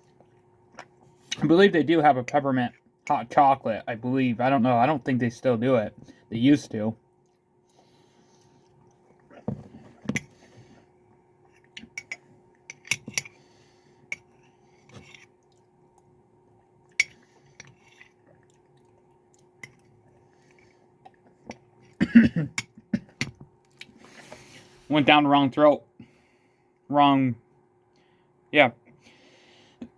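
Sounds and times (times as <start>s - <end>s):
person coughing: 22.0s - 23.2s.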